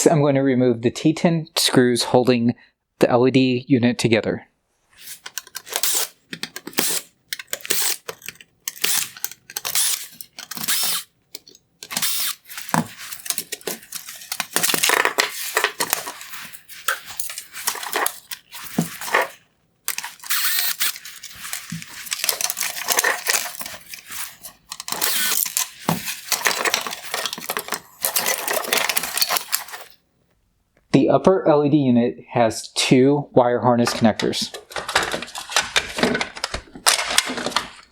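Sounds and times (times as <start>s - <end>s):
plastic parts handled: 5.0s - 30.0s, 34.2s - 37.9s
screwdriver backing out screws: 5.0s - 30.0s.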